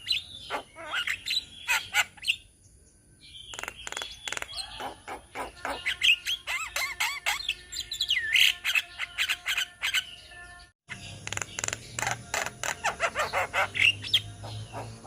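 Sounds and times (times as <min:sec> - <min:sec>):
mynas calling: 0:00.0 - 0:02.5, 0:03.5 - 0:10.1, 0:10.9 - 0:15.0.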